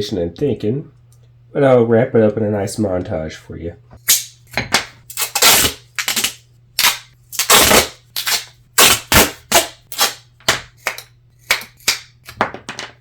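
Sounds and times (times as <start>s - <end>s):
faint steady hum: 0.0s - 13.0s
duct tape being torn off roll: 5.1s - 10.2s.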